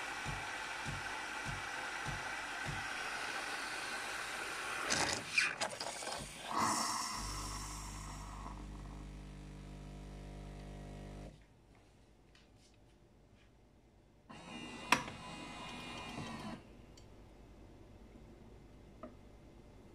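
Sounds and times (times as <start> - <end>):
coffee machine hissing: 0.0 - 11.3
electric hum: 7.2 - 11.4.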